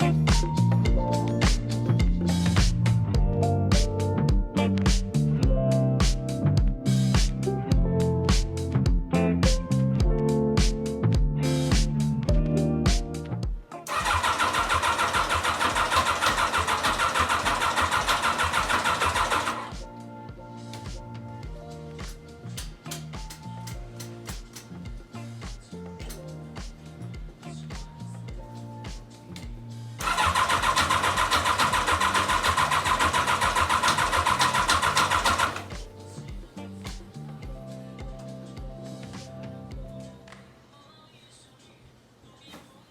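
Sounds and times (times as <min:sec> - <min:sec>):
background music: 0:00.0 - 0:42.9
motorcycle engine idling: 0:13.9 - 0:19.7, 0:30.0 - 0:35.7.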